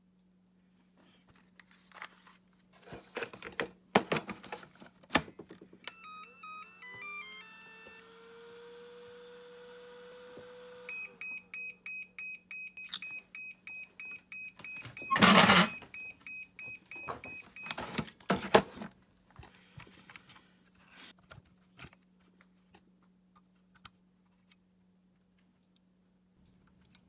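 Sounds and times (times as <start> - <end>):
electronic device beeping: 5.8 - 8.2.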